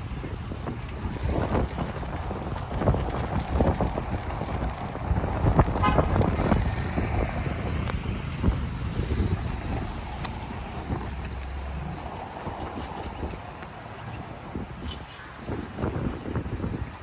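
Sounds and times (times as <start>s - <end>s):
road traffic rumble: 0.0s - 17.0s
car horn toot: 5.8s - 6.6s.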